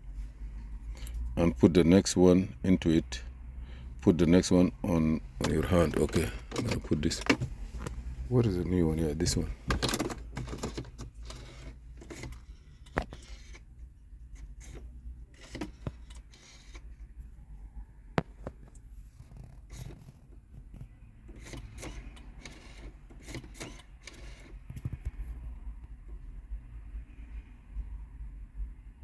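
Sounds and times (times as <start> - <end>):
handling clicks and knocks: 5.2 - 8.1, 8.9 - 13.7, 14.4 - 16.8, 18.2 - 24.1.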